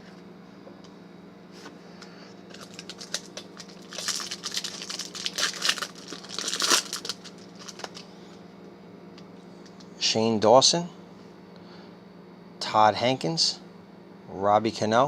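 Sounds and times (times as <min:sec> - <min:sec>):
foil wrapper tearing and crinkling: 0:02.5 - 0:08.1.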